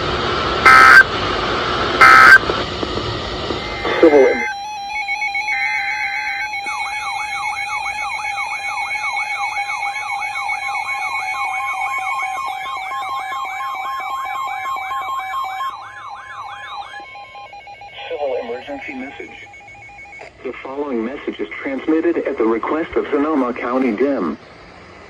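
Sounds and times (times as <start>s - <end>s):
electronic siren-like sweeping tone: 0.6s - 1.1s, 2.0s - 2.5s, 3.6s - 21.2s
steady electronic tones: 0.6s - 1.1s, 2.0s - 23.4s
two-tone electronic data burst: 0.7s - 1.1s, 2.0s - 2.4s, 3.6s - 21.8s.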